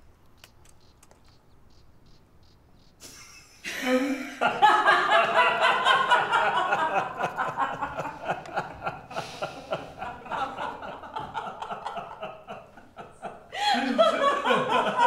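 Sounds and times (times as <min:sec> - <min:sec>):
people laughing: 0:03.0 - 0:15.0.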